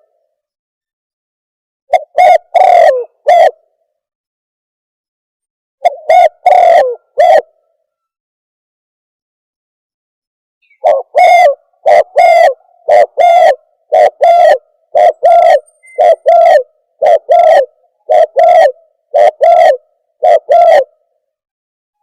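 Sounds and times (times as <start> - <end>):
dove lure call cooing: 1.9 - 3.7, 5.8 - 7.8, 10.6 - 21.1.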